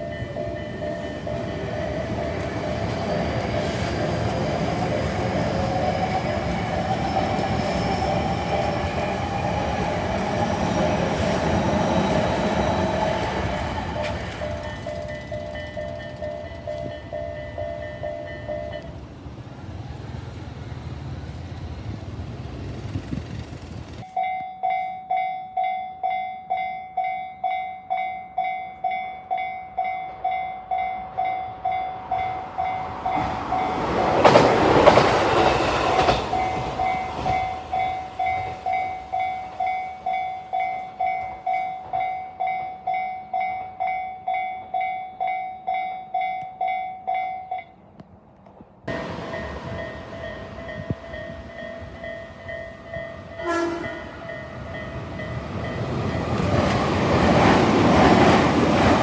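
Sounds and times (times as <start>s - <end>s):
level crossing warning bell: 0.0s - 19.0s, 24.1s - 34.1s, 35.4s - 47.9s, 48.9s - 59.0s
train rushing through: 0.0s - 24.2s, 30.3s - 42.5s, 48.8s - 59.0s
train rumbling past: 0.0s - 24.3s, 28.4s - 59.0s.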